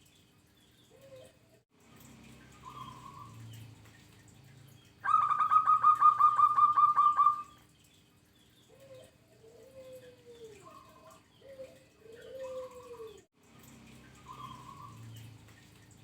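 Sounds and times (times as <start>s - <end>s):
dove singing fast notes: 5.0s - 7.6s.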